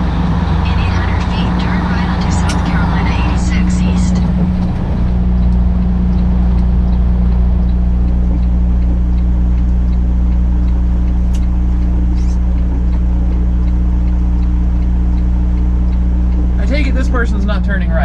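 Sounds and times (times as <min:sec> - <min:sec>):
diesel engine running at low revs: 0:00.0 - 0:18.0
turn signal ticking: 0:00.0 - 0:18.0
sharp click: 0:11.3 - 0:11.5.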